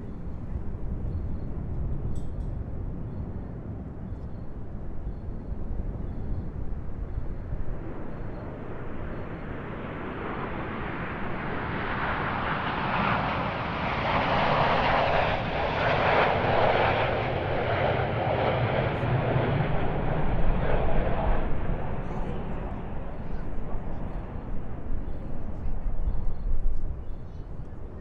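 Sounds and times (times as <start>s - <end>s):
jet aircraft roaring overhead: 5.6s - 28.0s.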